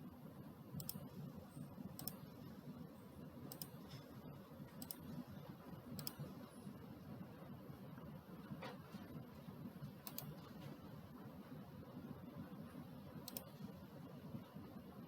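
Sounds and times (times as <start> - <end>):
low steady hum: 0.0 - 15.0
computer mouse clicks: 0.8 - 1.2, 2.0 - 2.3, 3.5 - 3.9, 4.7 - 5.1, 5.9 - 6.3, 10.0 - 10.6, 13.2 - 13.7.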